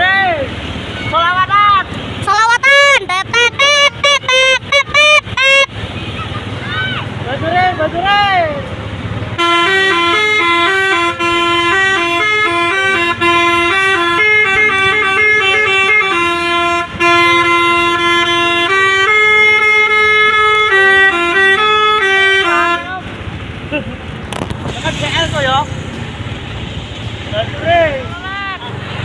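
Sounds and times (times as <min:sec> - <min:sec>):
bus horn playing a tune: 0:02.7 - 0:06.2, 0:09.4 - 0:23.2.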